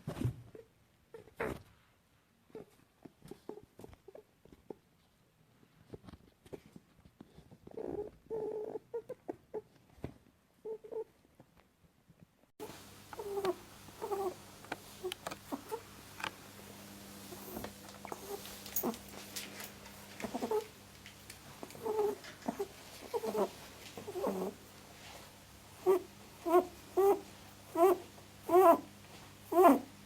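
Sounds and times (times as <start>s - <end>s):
faint low hum: 0.1s - 30.0s
rabbit squeaking: 13.2s - 15.9s, 17.3s - 19.2s, 20.0s - 20.8s, 21.5s - 24.6s, 25.8s - 28.9s, 29.5s - 29.9s.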